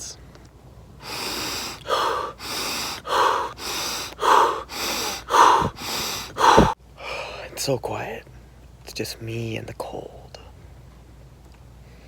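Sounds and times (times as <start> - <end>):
man breathing rapidly: 1.0 - 7.5.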